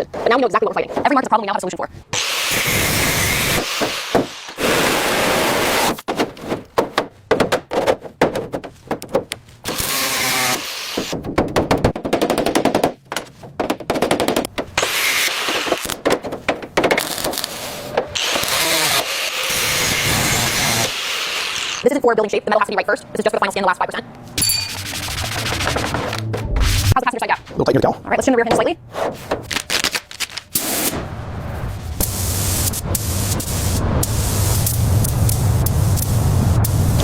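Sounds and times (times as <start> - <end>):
rapid-fire air hammering: 24.6 - 27.0, 32.0 - 37.0
air tool hissing: 32.0 - 37.0.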